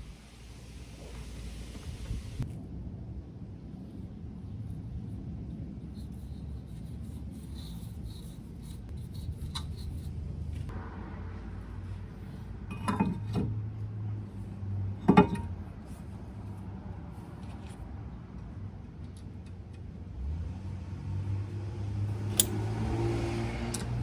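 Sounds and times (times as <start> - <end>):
metal tools clinking: 12.7 - 13.4
sharp metallic clanks: 22.2 - 22.7.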